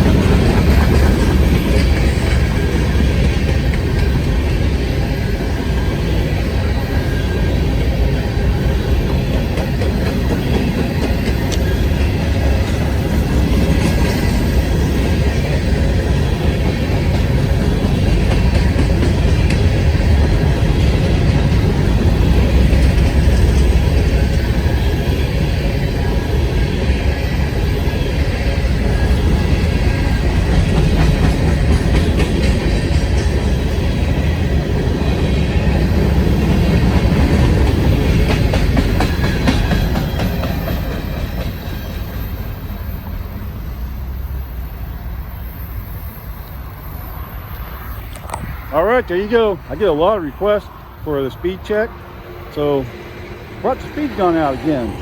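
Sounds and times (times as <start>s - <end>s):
train wheels rumbling on rails: 0.0s - 55.0s.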